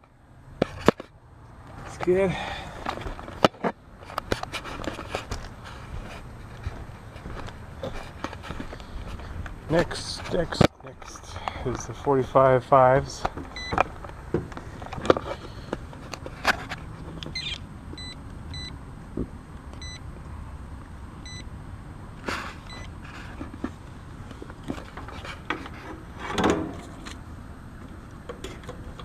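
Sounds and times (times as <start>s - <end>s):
meter probes clicking and rustling: 2.8s - 11.8s, 13.2s - 18.7s
multimeter short high beeps: 21.2s - 21.4s.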